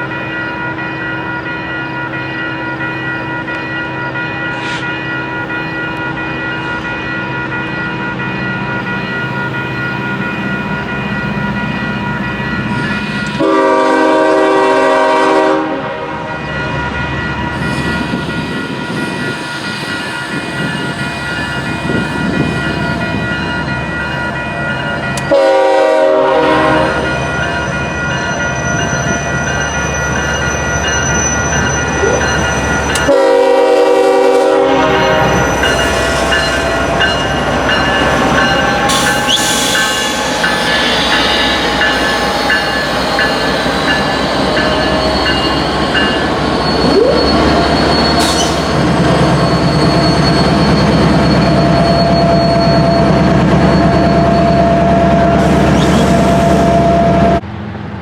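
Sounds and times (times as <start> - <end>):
freight train rolling: 0.0 - 58.0
locomotive air horn blasts: 13.4 - 16.2, 25.2 - 27.2, 32.9 - 35.7.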